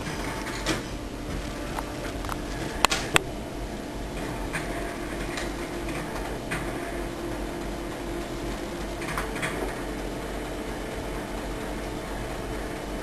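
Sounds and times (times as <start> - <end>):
indoor background hum: 0.0 - 13.0.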